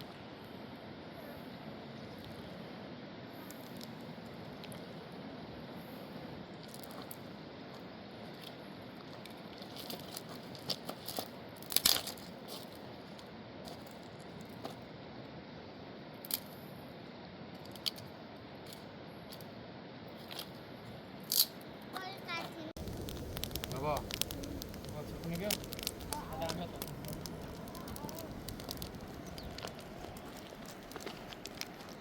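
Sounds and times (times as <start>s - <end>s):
steady rushing noise: 22.7s - 32.0s
sharp clicks and snaps: 22.8s - 32.0s.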